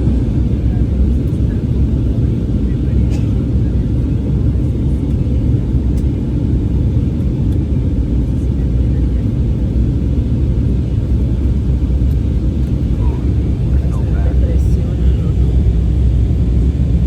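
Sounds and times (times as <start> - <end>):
airflow over fuselage: 0.0 - 17.0
jet engines rumbling: 0.0 - 17.0.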